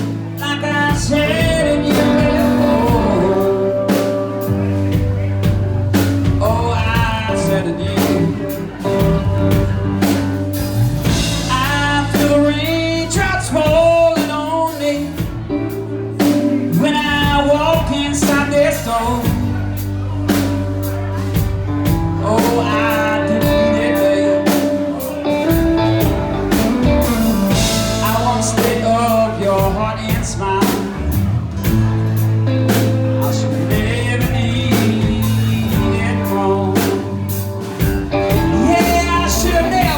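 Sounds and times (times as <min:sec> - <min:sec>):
band playing: 0:00.0 - 0:39.9
bass line: 0:00.0 - 0:39.9
drum kit: 0:00.0 - 0:39.9
guitar: 0:00.0 - 0:39.9
lead vocal singing: 0:00.4 - 0:05.6, 0:06.2 - 0:10.0, 0:33.2 - 0:37.5, 0:38.3 - 0:39.9.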